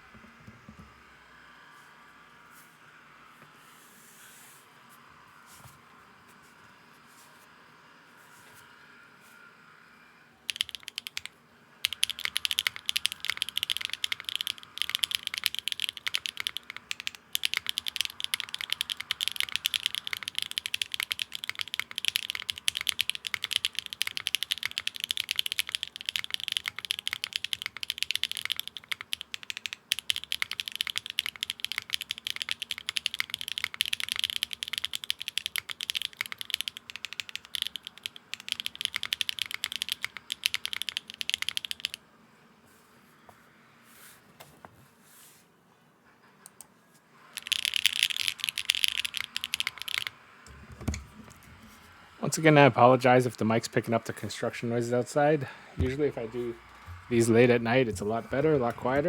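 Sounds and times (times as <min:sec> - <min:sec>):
mechanical keyboard typing: 0:10.5 - 0:42.0, 0:47.4 - 0:51.8, 0:55.8 - 0:59.0.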